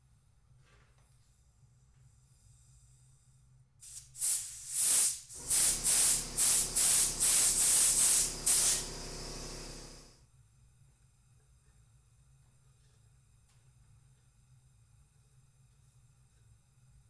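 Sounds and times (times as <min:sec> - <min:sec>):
short spray hisses: 0:03.8 - 0:10.1
steady quiet spray hiss: 0:03.8 - 0:10.1.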